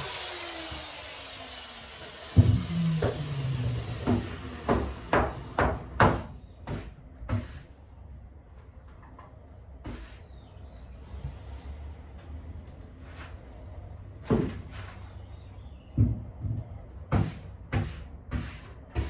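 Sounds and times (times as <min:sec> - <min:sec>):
objects knocking and clunking: 0:02.3 - 0:07.6, 0:16.0 - 0:17.9.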